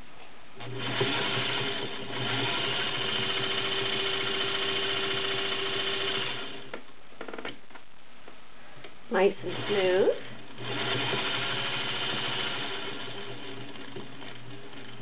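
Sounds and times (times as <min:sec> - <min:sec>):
sewing machine running: 0:00.6 - 0:06.7, 0:09.4 - 0:15.0.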